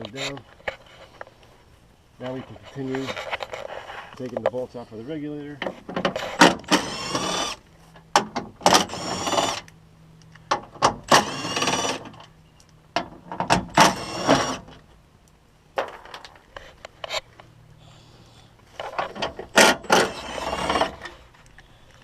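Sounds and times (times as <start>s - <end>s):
power driver whining: 6.0s - 9.8s, 10.6s - 12.4s, 13.5s - 14.8s, 18.8s - 21.7s.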